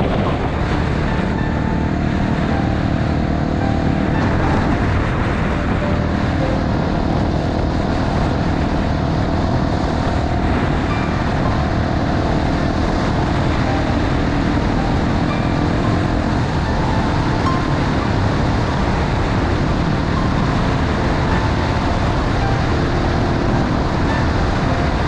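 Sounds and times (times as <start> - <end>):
wind rushing: 0.0 - 25.0
motorcycle engine running: 6.4 - 25.0.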